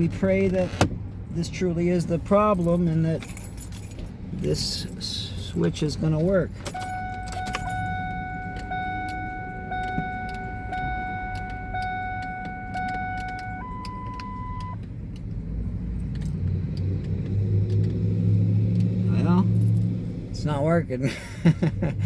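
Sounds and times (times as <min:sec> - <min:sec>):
low steady rumble: 0:00.0 - 0:22.0
high electronic warning tone: 0:06.8 - 0:14.8.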